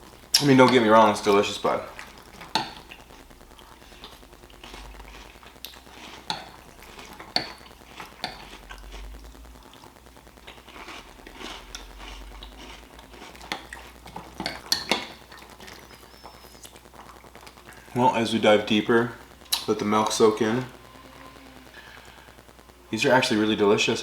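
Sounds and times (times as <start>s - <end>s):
spoon scraping a bowl: 6.0s - 8.6s.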